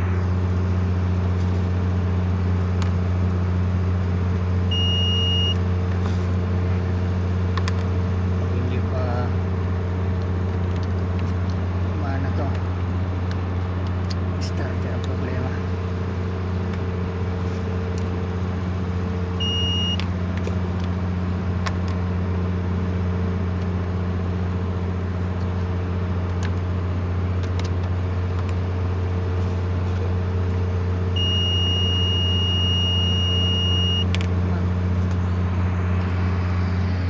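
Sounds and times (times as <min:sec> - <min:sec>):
engine idling drone: 0:00.0 - 0:37.0
high electronic beep: 0:04.7 - 0:05.6, 0:19.4 - 0:20.0, 0:31.2 - 0:34.1.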